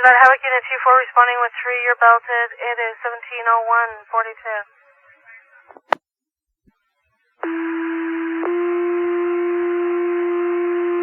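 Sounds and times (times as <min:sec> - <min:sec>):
radio hiss: 0:00.0 - 0:06.0
radio click: 0:05.7 - 0:06.0.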